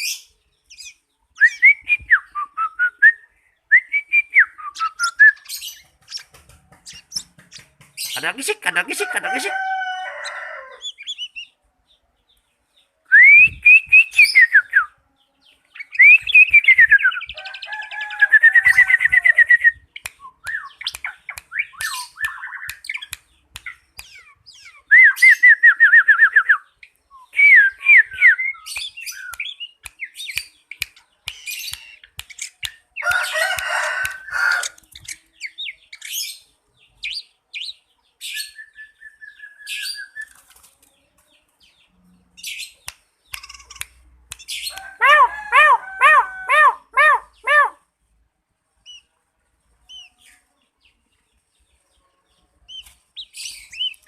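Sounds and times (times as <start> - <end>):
bird whistling song: 0.0 - 6.3, 13.1 - 15.0, 15.8 - 17.4, 18.0 - 32.6, 37.0 - 40.4, 52.7 - 54.0.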